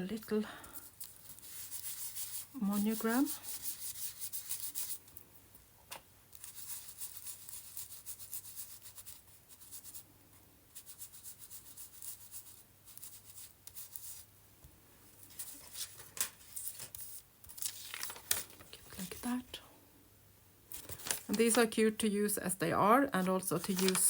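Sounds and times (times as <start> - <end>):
scratchy rubbing on paper: 0.7 - 5.0, 6.3 - 10.0, 10.7 - 14.3, 18.8 - 19.5.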